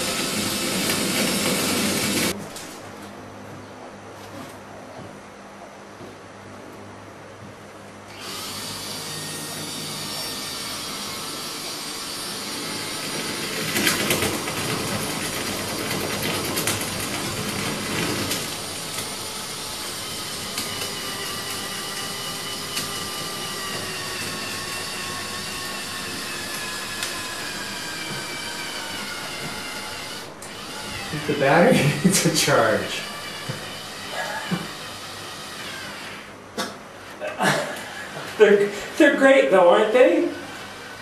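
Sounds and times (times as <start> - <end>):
cordless drill boring into wall: 0.0 - 2.4, 8.1 - 36.4, 40.3 - 41.0.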